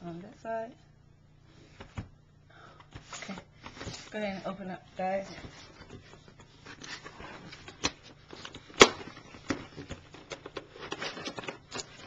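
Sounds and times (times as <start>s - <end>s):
packaging rustling: 5.4s - 12.0s.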